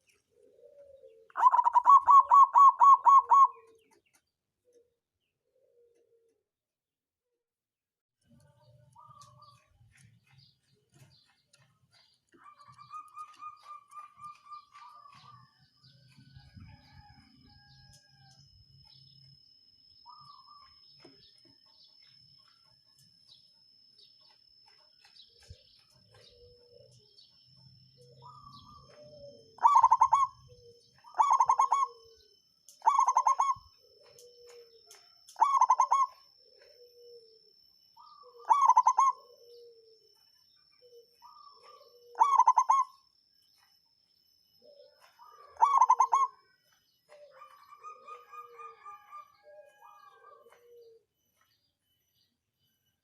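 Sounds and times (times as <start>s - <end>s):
dove cooing: 0.0s - 4.0s, 4.6s - 6.4s, 11.5s - 17.8s, 25.4s - 27.3s, 28.0s - 43.0s, 44.6s - 51.1s.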